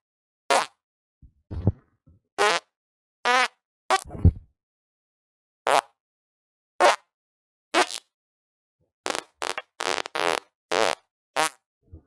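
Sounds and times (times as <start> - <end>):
fart sounds: 9.1 - 11.6.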